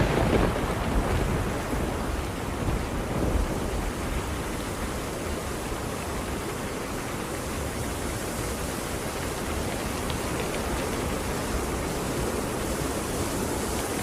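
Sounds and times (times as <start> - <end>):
thunder rumbling: 0.0 - 4.9
steady rain: 0.0 - 14.0.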